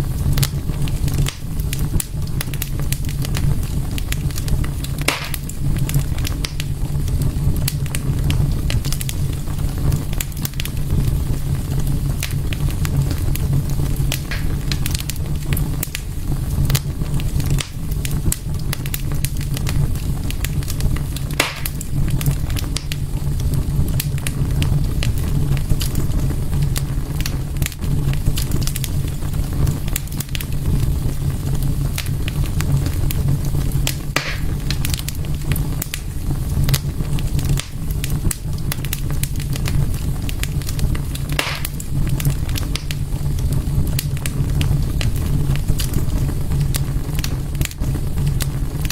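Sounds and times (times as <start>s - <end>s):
wood fire crackling: 0.0s - 48.9s
sharp pops: 5.1s - 5.5s, 14.1s - 14.9s, 21.4s - 21.8s, 34.1s - 34.7s, 41.3s - 41.8s
low rumble: 6.9s - 16.8s.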